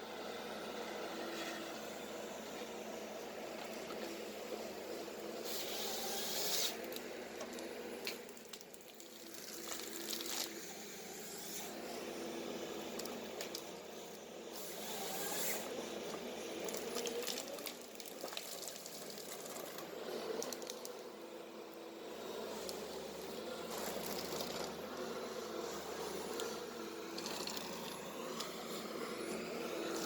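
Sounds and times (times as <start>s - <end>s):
hydraulic whine: 0.0s - 8.2s, 10.3s - 17.6s, 19.7s - 30.0s
crackling and rustling of trees: 15.2s - 21.1s
harvester engine hum: 15.5s - 30.0s.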